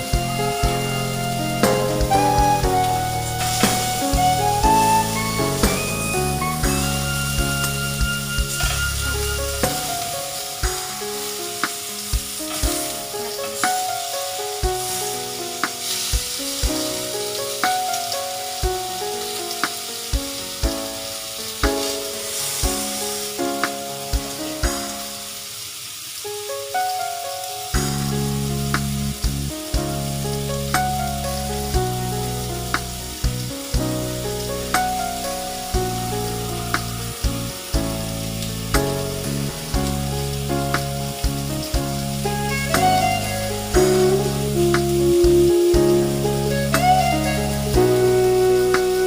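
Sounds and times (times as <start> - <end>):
background music with a beat: 0.0 - 14.9, 15.6 - 25.3, 27.7 - 32.1, 32.7 - 49.0
food sizzling in a frying pan: 0.0 - 49.0.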